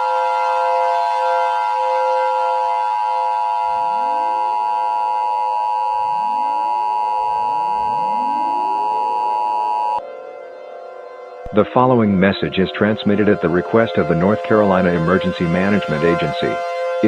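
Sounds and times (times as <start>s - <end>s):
harsh two-pitch alert tone: 2.8s - 10.0s, 11.5s - 17.0s
rising swooping tones: 5.8s - 10.0s.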